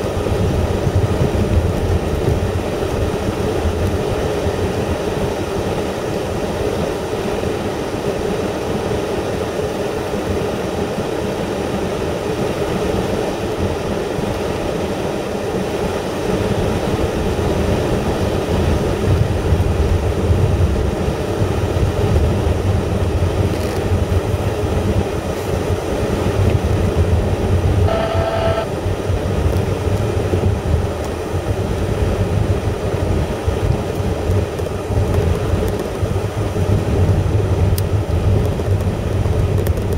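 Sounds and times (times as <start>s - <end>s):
tyre and road noise: 22.1s - 31.7s
short beep: 27.8s - 28.7s.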